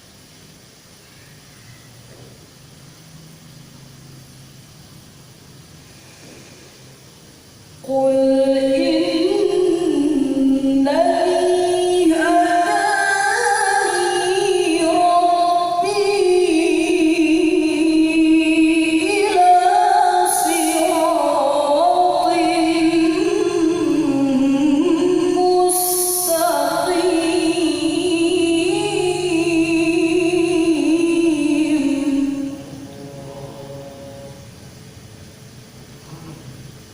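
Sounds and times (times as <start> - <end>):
woman chanting recitation: 7.8 - 34.5.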